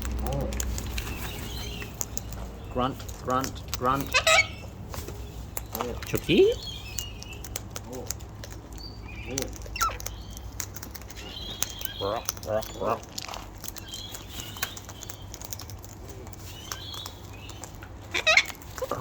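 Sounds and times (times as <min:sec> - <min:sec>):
birds beaks clicking and tapping: 0:00.0 - 0:19.0
soft bird calls: 0:00.0 - 0:19.0
high bird chirps: 0:00.9 - 0:03.0, 0:03.9 - 0:07.6, 0:08.7 - 0:10.6, 0:11.2 - 0:12.3.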